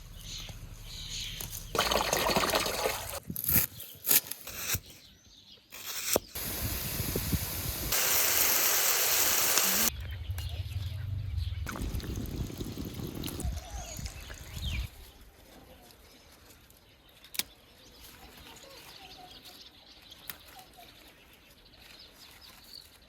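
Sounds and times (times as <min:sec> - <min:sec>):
water rushing and pouring: 0:01.8 - 0:03.2, 0:11.6 - 0:14.9.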